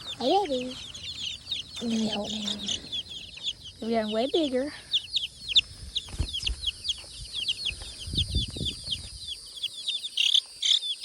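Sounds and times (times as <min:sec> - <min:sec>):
chicks peeping: 0:00.0 - 0:11.0.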